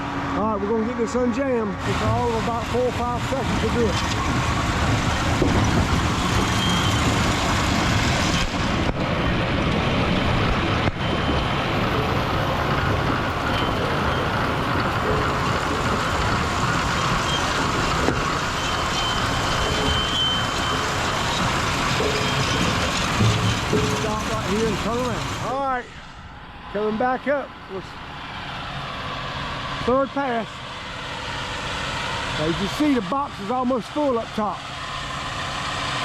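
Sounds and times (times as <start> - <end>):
tractor diesel engine running: 0.0 - 36.0.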